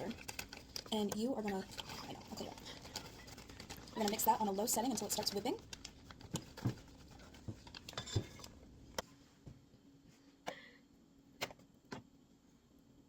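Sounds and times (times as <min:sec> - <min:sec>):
kitchen things clicking and knocking: 0:00.0 - 0:08.6.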